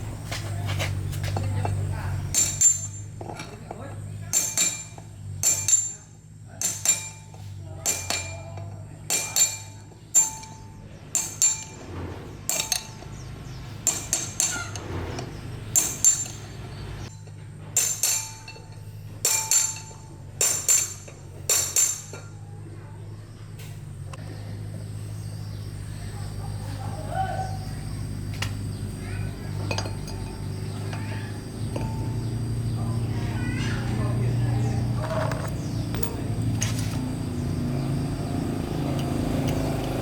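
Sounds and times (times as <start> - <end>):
hammer striking metal: 2.3 - 3.4, 4.3 - 22.4.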